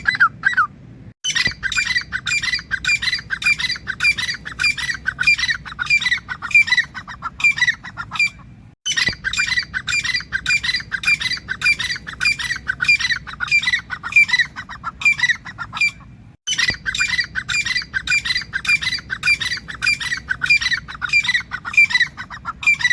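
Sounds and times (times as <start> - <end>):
francolin calling harshly: 0.0 - 22.9.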